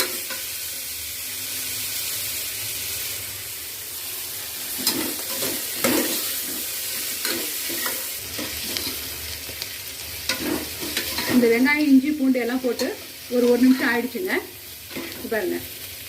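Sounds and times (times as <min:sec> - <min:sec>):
food sizzling in hot oil: 0:00.0 - 0:16.0
utensil scraping pan: 0:04.7 - 0:09.1, 0:10.3 - 0:11.6.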